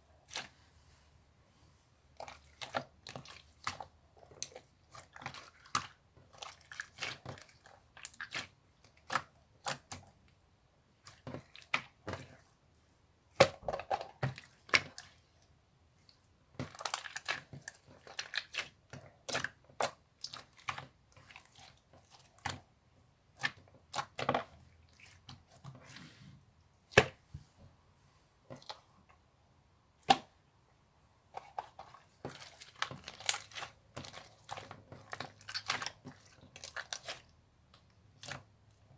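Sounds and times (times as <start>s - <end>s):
slime squishing with sticky clicks: 16.0s - 25.7s, 31.5s - 38.9s.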